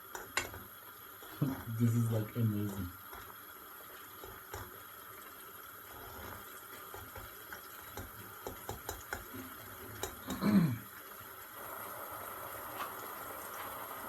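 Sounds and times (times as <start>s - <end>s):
utensil clicking against pan: 0.0s - 3.4s, 4.2s - 4.8s, 6.8s - 10.4s
food sizzling in frying pan: 0.0s - 14.0s.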